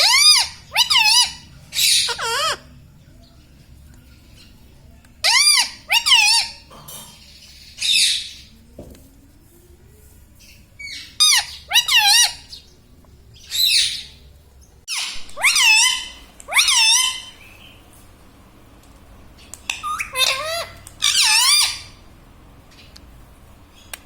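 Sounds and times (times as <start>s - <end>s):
parrot calling: 0.0s - 2.8s, 5.2s - 6.7s, 10.8s - 12.6s, 14.9s - 17.8s, 19.6s - 22.0s.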